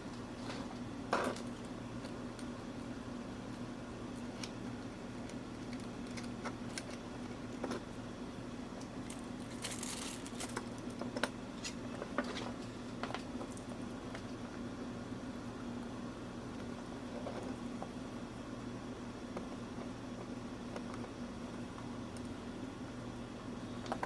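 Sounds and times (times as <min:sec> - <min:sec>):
low electrical hum: 0:00.0 - 0:24.0
small parts and tools rattling: 0:09.1 - 0:10.7.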